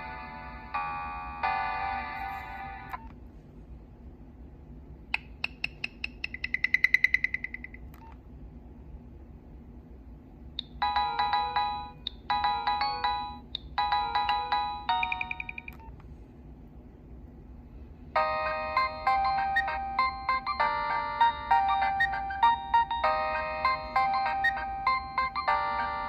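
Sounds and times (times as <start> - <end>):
ringtone melody: 0.0 - 3.0, 6.1 - 7.8, 10.6 - 15.8, 18.2 - 26.0.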